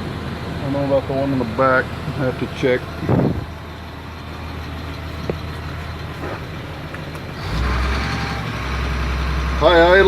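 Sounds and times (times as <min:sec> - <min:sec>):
diesel engine idling: 0:00.0 - 0:10.0.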